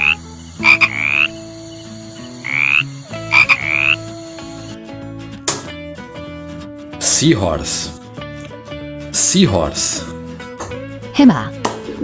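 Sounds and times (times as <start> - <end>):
frog croaking: 0.0 - 4.2.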